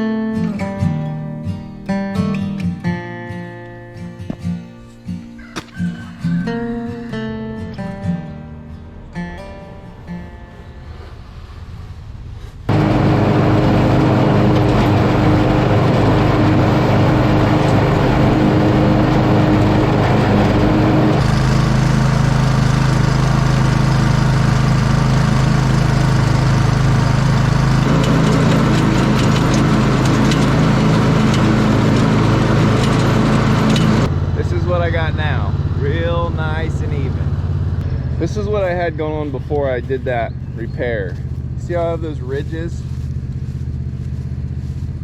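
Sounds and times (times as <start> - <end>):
mower engine running: 12.7 - 45.0.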